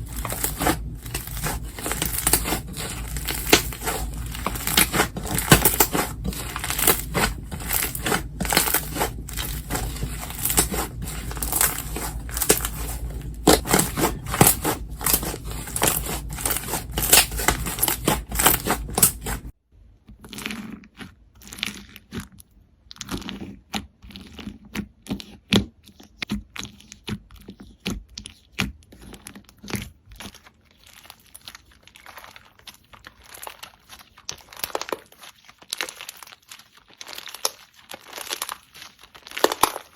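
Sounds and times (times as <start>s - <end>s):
slime crackling and popping: 0.0s - 19.5s, 29.0s - 39.9s.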